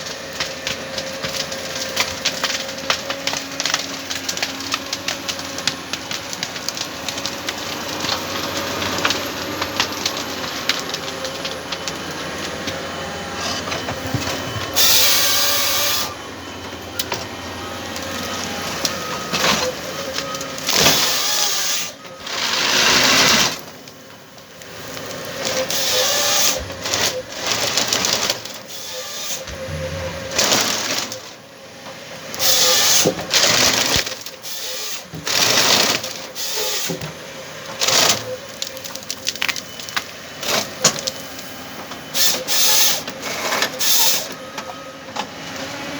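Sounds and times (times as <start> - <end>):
harvester engine and hydraulics: 8.0 - 35.0
loud bursts of machine noise: 12.1 - 22.7, 24.6 - 36.8.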